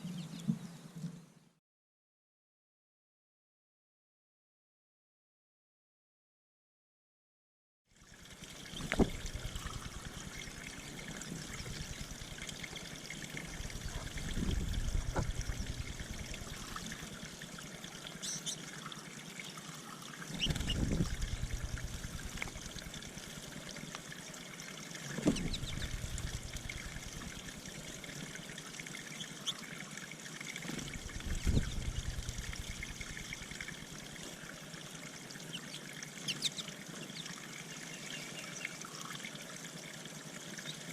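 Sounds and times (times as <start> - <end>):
water trickling into pond: 7.9 - 40.9
faint bird chirps: 18.2 - 18.6, 25.4 - 26.1, 35.4 - 39.2.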